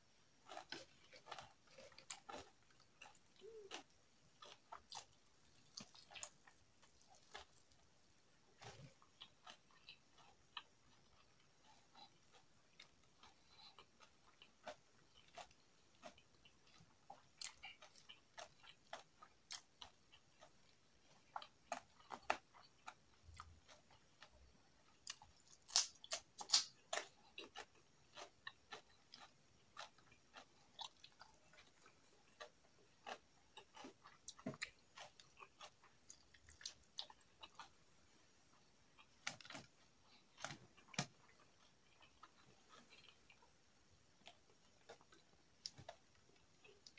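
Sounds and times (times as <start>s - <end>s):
crispy chicken skin crunching: 25.4s - 26.8s.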